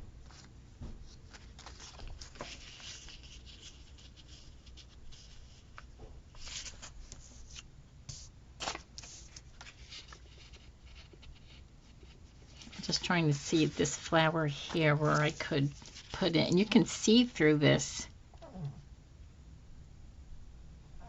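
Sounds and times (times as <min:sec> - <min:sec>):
paper stickers rustling: 0:00.2 - 0:07.6, 0:08.6 - 0:17.8.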